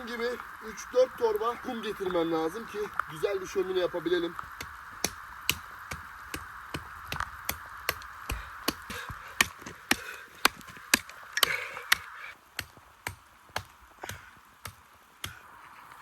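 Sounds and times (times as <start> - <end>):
steady rain: 0.0 - 16.0
sharp knocks: 4.6 - 12.0.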